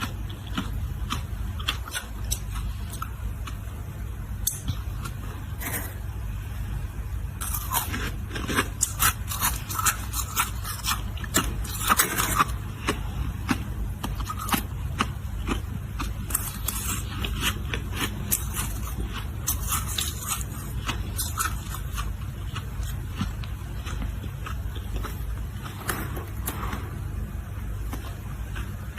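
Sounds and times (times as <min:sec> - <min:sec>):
ice being chewed: 0:00.0 - 0:03.6, 0:07.4 - 0:26.0
low hum: 0:00.0 - 0:28.9.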